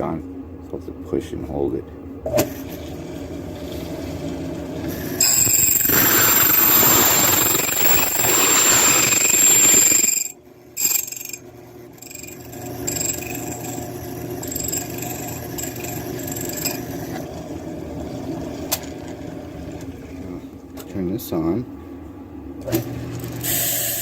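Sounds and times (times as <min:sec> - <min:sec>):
motor high whine: 0:04.0 - 0:20.6
key cutter grinding metal: 0:05.2 - 0:11.4, 0:12.0 - 0:17.2.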